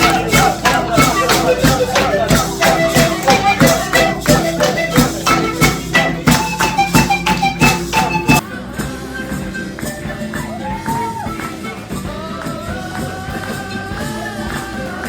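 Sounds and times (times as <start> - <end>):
melody of held notes: 0.0 - 8.4
percussion beat: 0.0 - 15.0.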